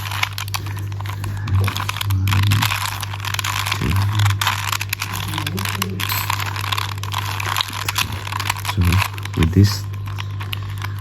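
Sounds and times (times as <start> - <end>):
low hum: 0.0 - 11.0
puzzle cube clicking: 0.0 - 11.0.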